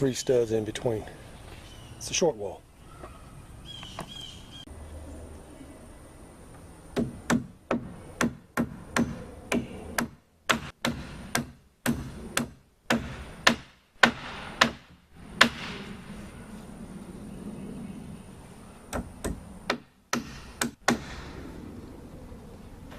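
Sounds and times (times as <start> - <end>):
hammer driving nails into wood: 7.0 - 15.7.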